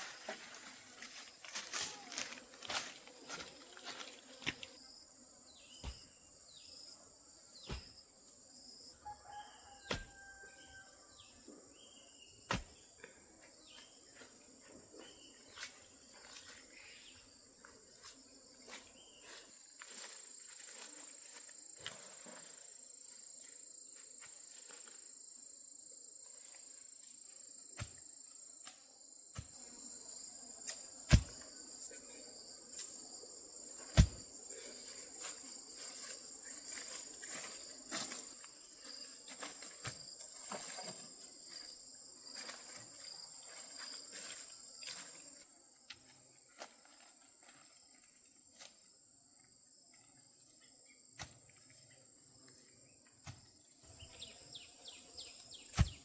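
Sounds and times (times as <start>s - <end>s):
insects chirring: 14.8s - 56.0s.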